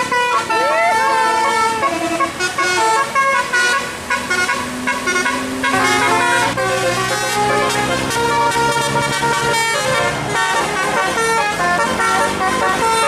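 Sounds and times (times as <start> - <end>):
musical air horn playing a tune: 0.0 - 13.0
low held horn note: 4.3 - 12.2.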